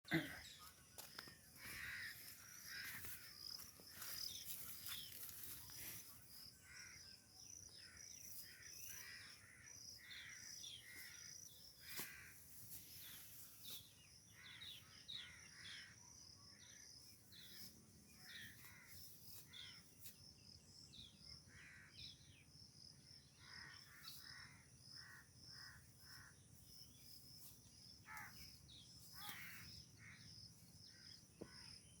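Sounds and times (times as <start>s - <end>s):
birds calling: 0.1s - 16.0s, 23.4s - 32.0s
insects chirping: 0.6s - 16.3s.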